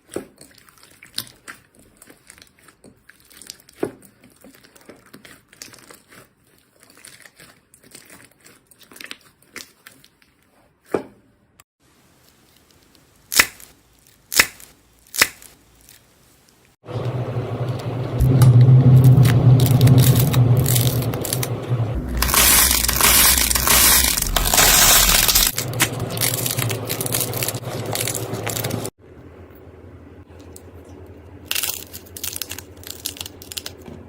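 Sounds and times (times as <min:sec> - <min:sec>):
crunchy slime crackling: 0:00.3 - 0:10.4, 0:12.1 - 0:16.6, 0:19.0 - 0:28.9, 0:31.4 - 0:33.9.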